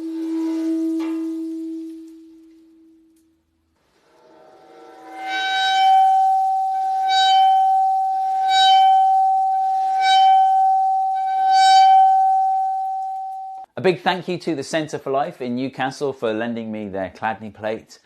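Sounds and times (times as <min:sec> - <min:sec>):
metal plate ringing high: 0:04.0 - 0:13.7.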